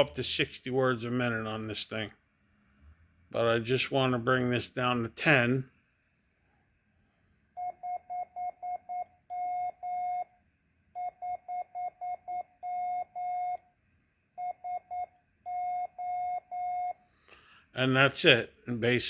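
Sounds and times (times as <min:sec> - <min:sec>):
morse code beeping: 0:07.6 - 0:10.3, 0:11.0 - 0:13.6, 0:14.4 - 0:17.0.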